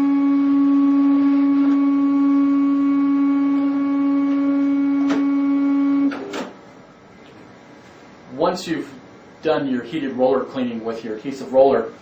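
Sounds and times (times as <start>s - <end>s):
card printer humming: 0.0s - 6.5s.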